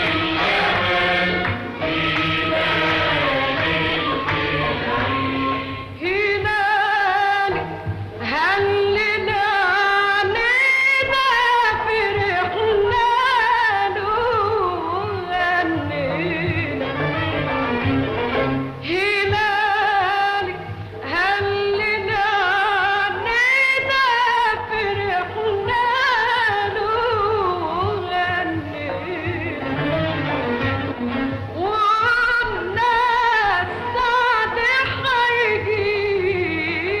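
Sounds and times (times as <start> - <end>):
melismatic singing voice: 0.0 - 17.2
woman singing with vibrato: 0.0 - 17.2, 18.8 - 30.4, 31.4 - 37.0
low musical accompaniment: 0.0 - 37.0.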